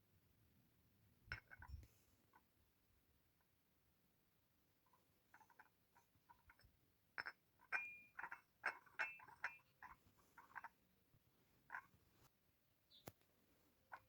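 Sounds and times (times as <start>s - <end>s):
crockery clinking: 6.5s - 10.7s.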